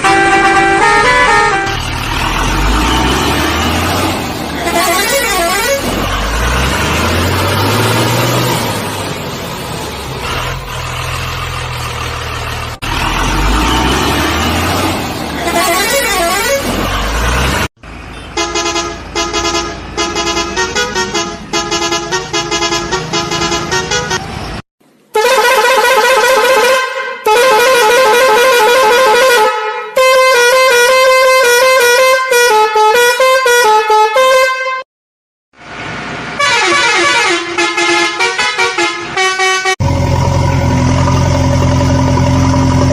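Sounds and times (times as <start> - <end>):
horn tones changing pitch: 0.0 - 8.7, 12.9 - 17.4, 25.1 - 34.8.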